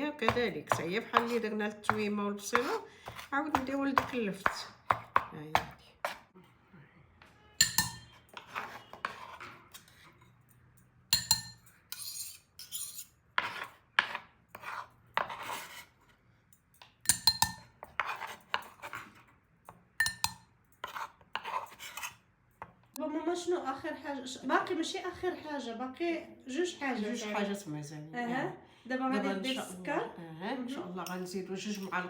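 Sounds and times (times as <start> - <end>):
knife knocking and scraping on board: 0.2 - 6.3, 7.6 - 10.0, 11.9 - 15.9, 17.2 - 22.8.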